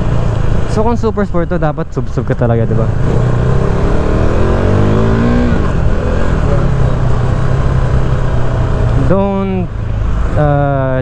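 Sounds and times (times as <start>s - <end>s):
motorcycle engine accelerating: 2.6s - 10.4s.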